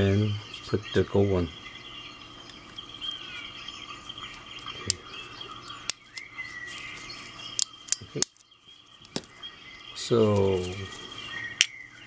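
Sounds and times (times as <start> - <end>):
birds chirping: 0.0 - 12.0
small parts clicking: 7.6 - 8.5.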